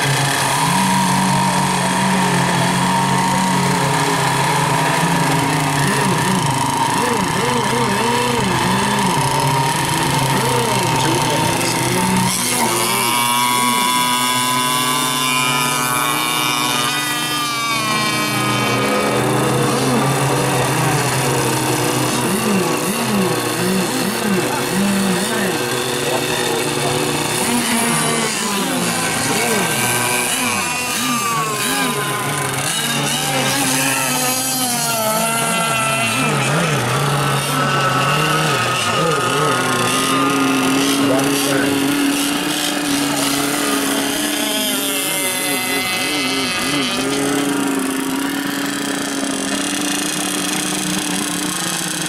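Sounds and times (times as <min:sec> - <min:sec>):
racing boat engine whining: 0:00.0 - 0:52.0.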